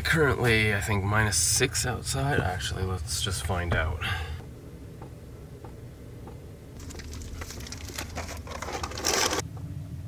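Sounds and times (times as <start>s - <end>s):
low steady hum: 0.0s - 10.0s
rustling and crinkling: 6.8s - 9.4s
scrape or clatter: 6.8s - 9.4s.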